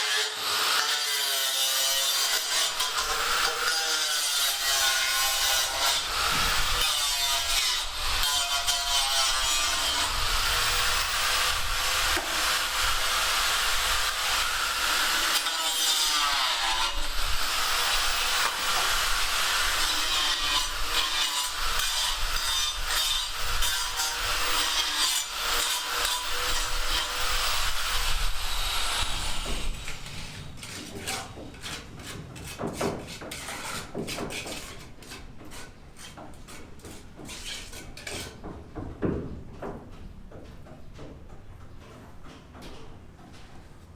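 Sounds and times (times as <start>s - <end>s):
power tool cutting: 0.0s - 30.4s.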